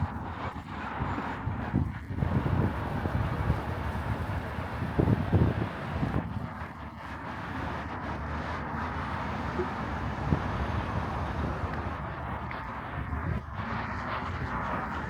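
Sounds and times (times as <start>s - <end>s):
passing vehicles humming: 3.8s - 15.0s.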